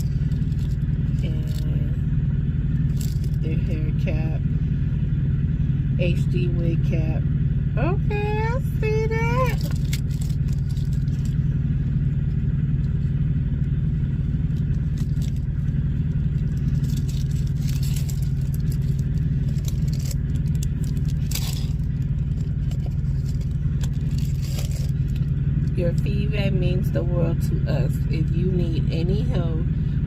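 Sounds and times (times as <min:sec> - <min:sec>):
packaging crackling: 0:00.0 - 0:00.8, 0:09.5 - 0:11.4, 0:14.4 - 0:25.4
engine idling: 0:00.0 - 0:30.0.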